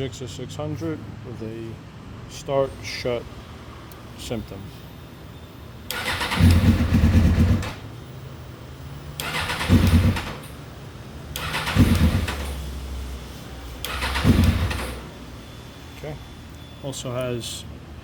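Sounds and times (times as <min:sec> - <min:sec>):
motorcycle engine starting and dying: 0:05.9 - 0:07.8, 0:09.2 - 0:10.5, 0:11.4 - 0:12.6, 0:13.8 - 0:15.0.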